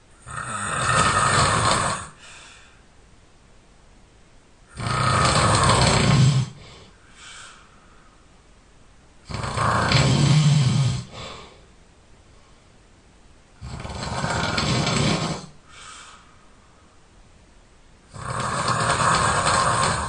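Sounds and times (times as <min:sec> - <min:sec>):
person snoring loudly: 0:00.2 - 0:02.2, 0:04.7 - 0:06.9, 0:09.2 - 0:11.5, 0:13.6 - 0:15.6, 0:18.1 - 0:20.0.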